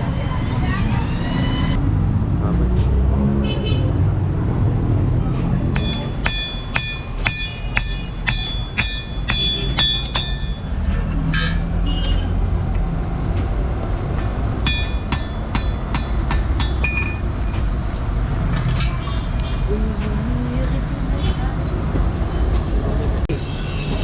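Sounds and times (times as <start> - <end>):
hammer blows on anvil: 5.7 - 12.2, 14.6 - 17.7.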